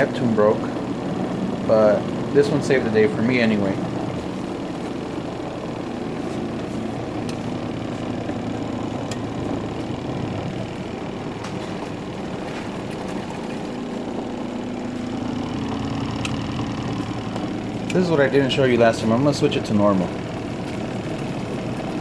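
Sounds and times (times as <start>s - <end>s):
washing machine motor running: 0.0s - 22.0s.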